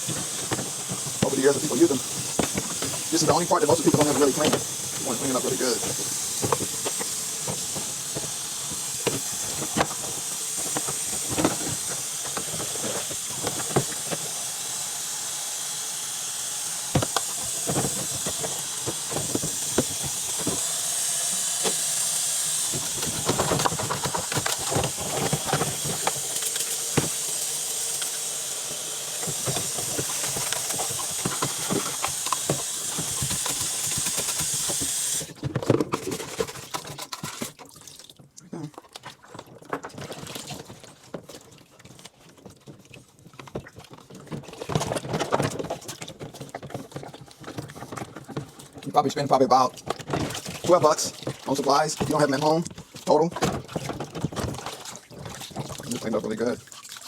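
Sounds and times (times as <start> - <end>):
plastic drawer knocking and clattering: 0.0 - 5.0, 17.0 - 20.7, 49.9 - 55.7
water running from a tap: 0.0 - 35.4, 37.5 - 38.7, 48.6 - 57.0.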